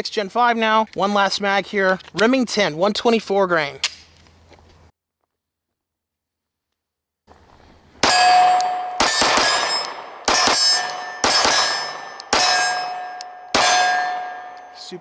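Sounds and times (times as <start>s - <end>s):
pistol shots: 8.0s - 14.9s
steel target ringing: 8.0s - 15.0s.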